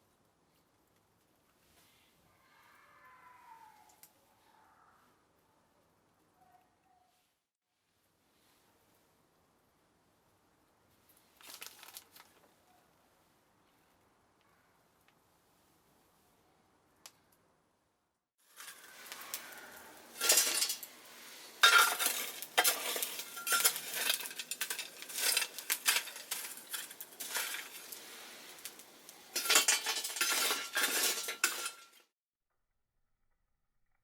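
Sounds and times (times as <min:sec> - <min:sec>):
food sizzling: 0:18.4 - 0:32.0
metal utensils scraping a pan: 0:18.4 - 0:32.0
faint steady hiss: 0:18.5 - 0:29.7.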